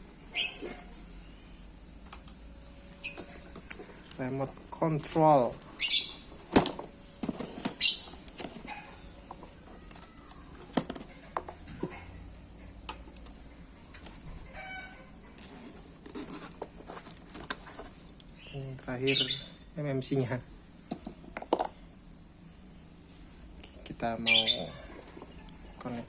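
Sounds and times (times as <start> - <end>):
packaging rustling: 15.4 - 18.1.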